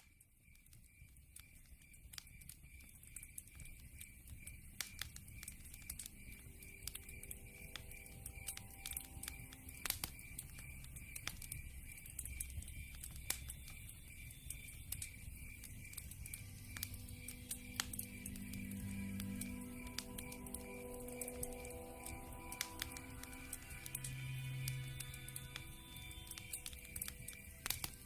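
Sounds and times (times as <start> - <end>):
wood fire crackling and popping: 0.0 - 28.0
faint steady high tone: 5.5 - 28.0.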